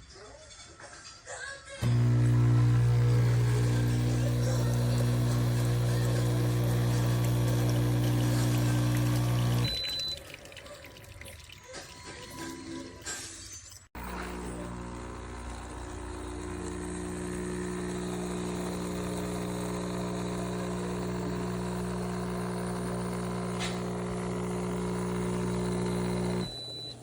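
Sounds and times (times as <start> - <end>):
espresso machine pump buzzing: 1.8 - 10.1, 14.0 - 27.0.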